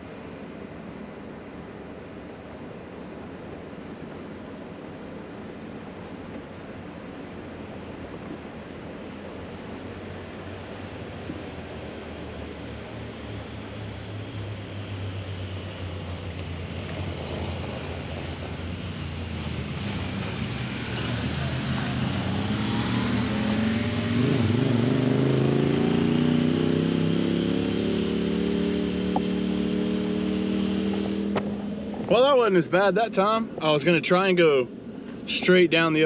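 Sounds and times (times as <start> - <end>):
truck engine revving: 16.6 - 32.2.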